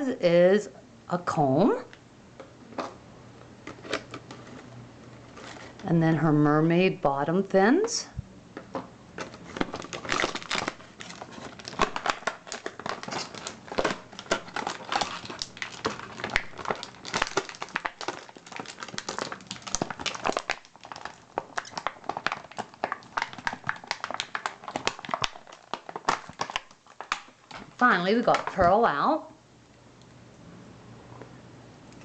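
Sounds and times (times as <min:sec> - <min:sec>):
plastic packaging crinkling: 0:03.6 - 0:06.0, 0:08.7 - 0:28.9.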